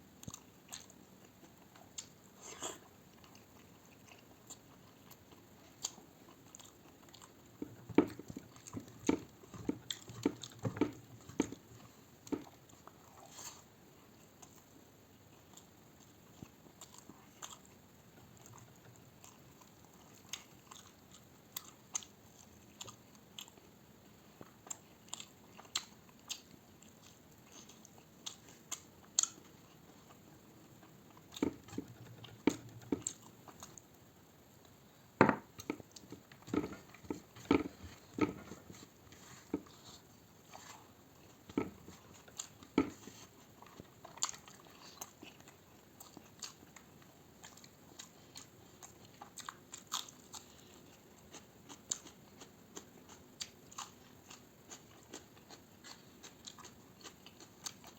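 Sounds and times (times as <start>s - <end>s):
chewing and wet mouth clicks: 0.2s - 2.2s, 24.4s - 30.2s, 41.5s - 57.9s.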